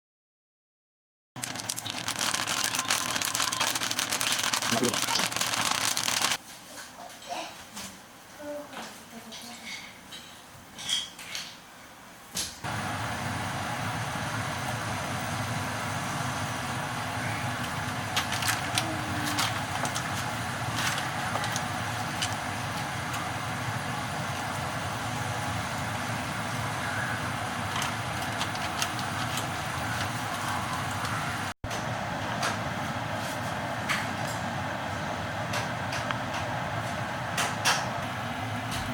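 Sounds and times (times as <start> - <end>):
crackles and pops of frying: 1.4 - 6.4
fish deep-frying in hot oil: 1.4 - 6.4.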